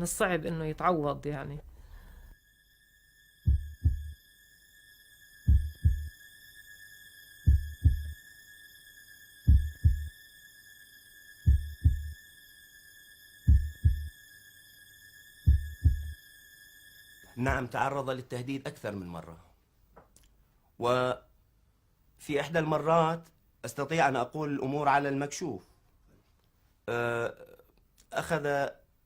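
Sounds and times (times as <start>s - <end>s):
steady high-pitched tone: 1.8s - 19.1s
heartbeat thumps: 3.5s - 4.2s, 5.5s - 6.1s, 7.5s - 8.2s, 9.5s - 10.1s, 11.5s - 12.2s, 13.5s - 14.1s, 15.5s - 16.2s, 17.5s - 17.7s.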